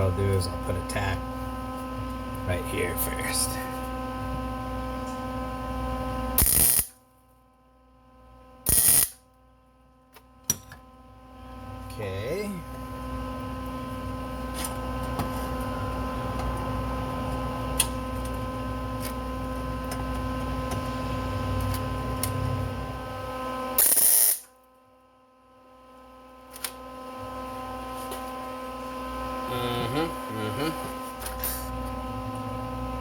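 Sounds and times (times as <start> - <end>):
electrical hum: 0.0 - 33.0
welding arc crackling hiss: 6.4 - 7.0, 8.7 - 9.2, 23.8 - 24.5.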